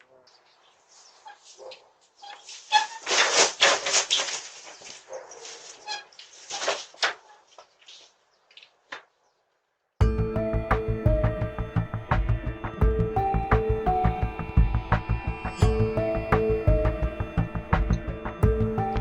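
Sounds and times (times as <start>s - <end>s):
dog barking: 1.2s - 2.0s, 5.0s - 5.8s.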